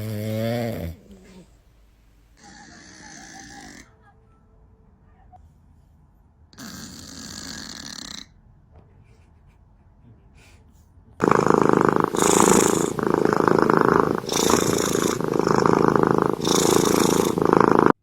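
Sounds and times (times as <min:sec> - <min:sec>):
cat purring loudly: 0:06.6 - 0:08.3, 0:11.2 - 0:18.0.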